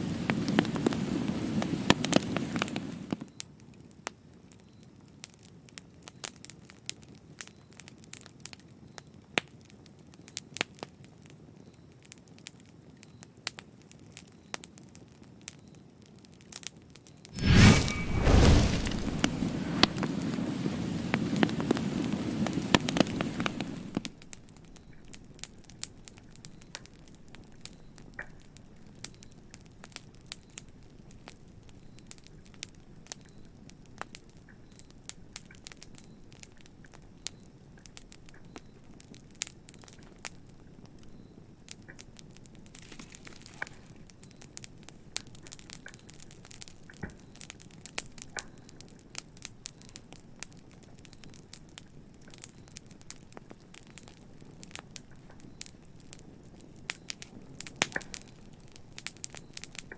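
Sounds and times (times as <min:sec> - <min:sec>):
dense rushing noise: 0:17.4 - 0:20.4
wood fire crackling: 0:17.4 - 0:26.2.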